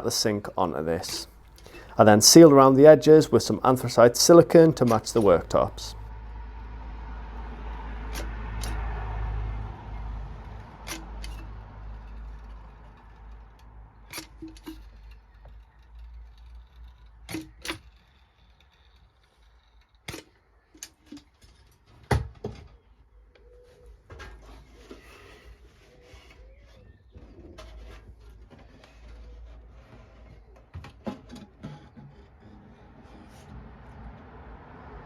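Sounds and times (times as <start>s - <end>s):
clicks and knocks of tools: 8.1s - 8.9s, 10.5s - 22.7s.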